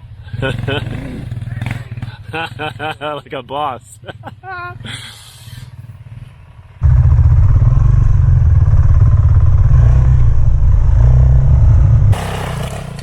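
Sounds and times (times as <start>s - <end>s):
motorcycle engine running hard: 0.1s - 2.6s, 5.7s - 13.0s.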